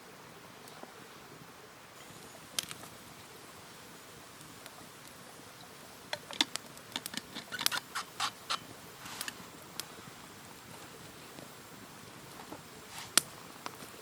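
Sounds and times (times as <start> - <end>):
steady background hiss: 0.0 - 14.0
sharp clicks and snaps: 6.1 - 8.6.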